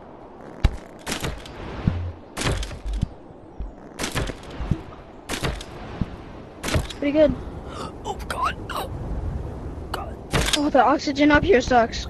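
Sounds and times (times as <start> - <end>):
low rumble: 0.0 - 7.8.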